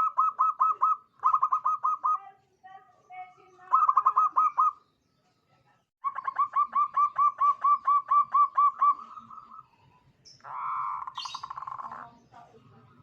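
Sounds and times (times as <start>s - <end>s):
dove cooing: 0.0s - 2.2s, 3.6s - 4.8s, 6.0s - 9.7s, 10.4s - 12.6s.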